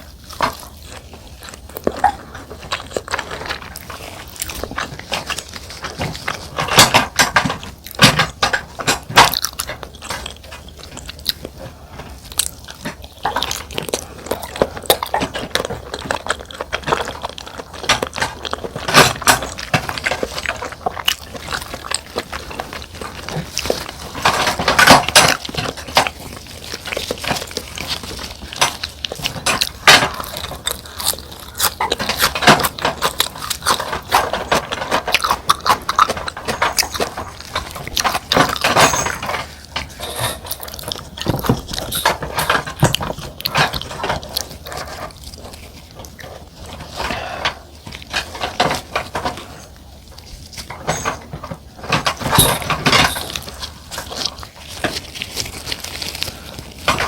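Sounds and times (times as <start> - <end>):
wet chewing and mouth sounds: 0.0 - 57.0
utensils clicking against dishes: 12.4 - 45.3, 50.7 - 55.4.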